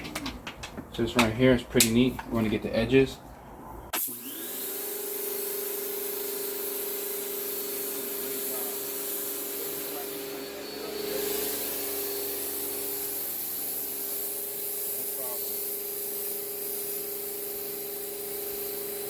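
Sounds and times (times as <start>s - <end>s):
pressure washer motor humming: 4.0s - 19.0s
water spraying hiss: 10.9s - 19.0s.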